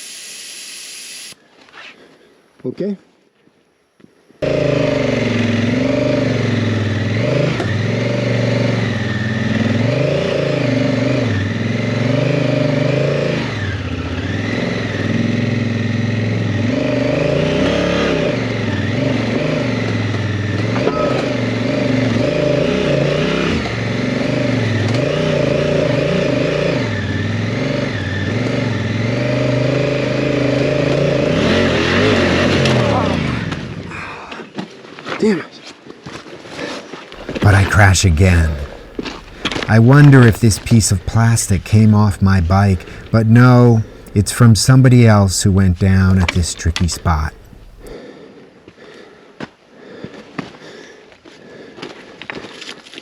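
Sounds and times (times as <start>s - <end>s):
motorcycle engine revving: 4.4s - 34.0s, 37.2s - 48.0s.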